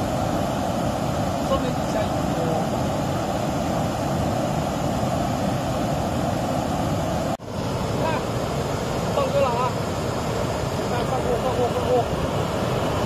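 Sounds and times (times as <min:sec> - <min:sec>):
stream water rushing: 0:00.0 - 0:13.0.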